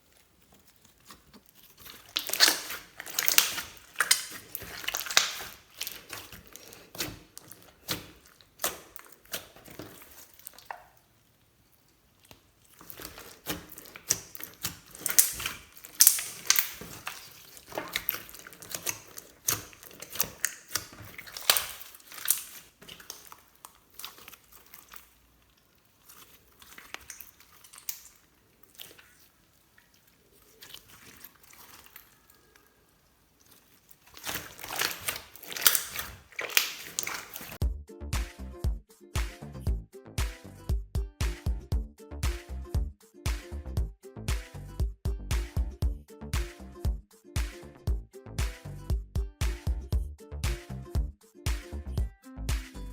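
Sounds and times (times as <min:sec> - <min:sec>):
hands squishing slime: 0:00.0 - 0:37.6.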